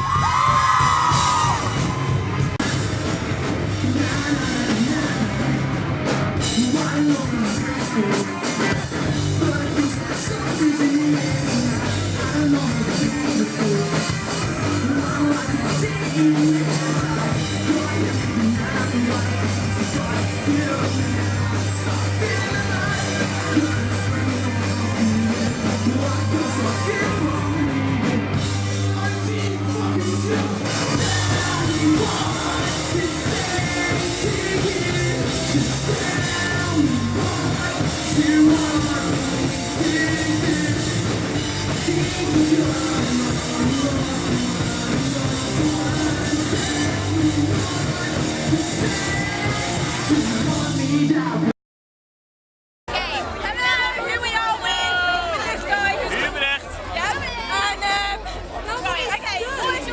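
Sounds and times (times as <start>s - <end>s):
rock band playing live: 0.0s - 51.5s
person singing: 3.6s - 51.5s.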